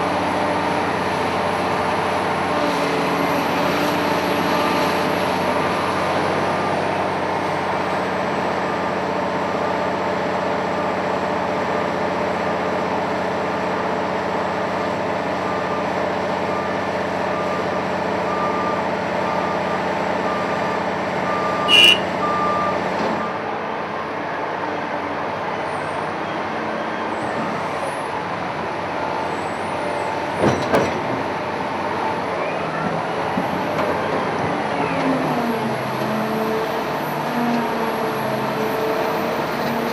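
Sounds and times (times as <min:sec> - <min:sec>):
diesel engine under load: 0:00.0 - 0:39.9
reversing alarm beeping: 0:16.5 - 0:23.4
sharp burst of sound: 0:21.7 - 0:22.1.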